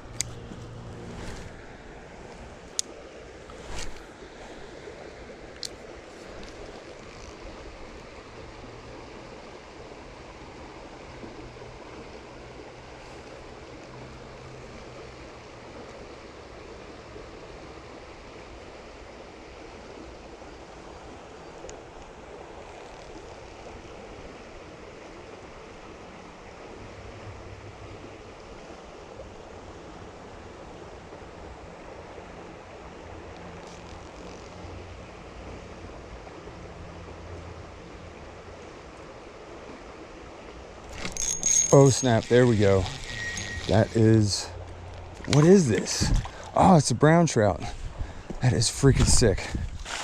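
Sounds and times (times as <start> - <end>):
water rushing over rapids: 29.6 - 50.0.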